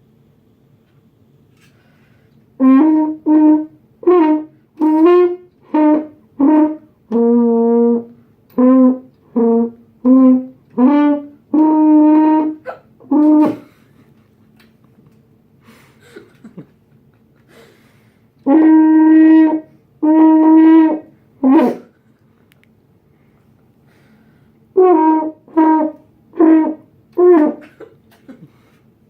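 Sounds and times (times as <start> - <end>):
french horn short notes: 2.6 - 13.8.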